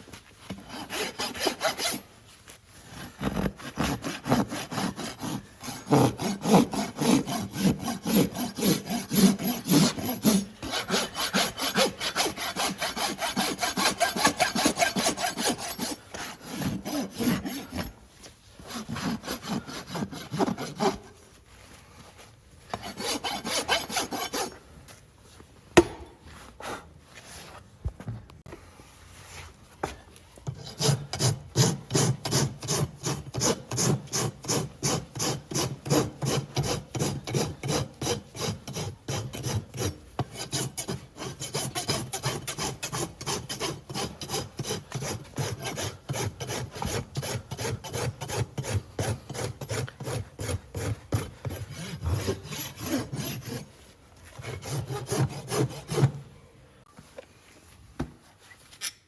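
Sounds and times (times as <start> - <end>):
rasp filing a horse's hoof: 0.5 - 2.1, 3.1 - 18.0, 18.6 - 21.2, 22.7 - 24.6, 30.4 - 56.2.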